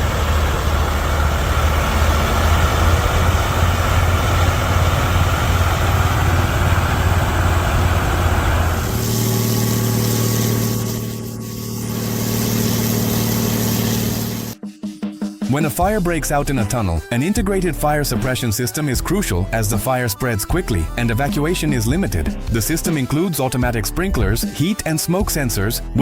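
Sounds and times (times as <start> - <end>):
road cleaning machine engine drone: 0.0 - 14.6
steady hiss: 0.0 - 14.6.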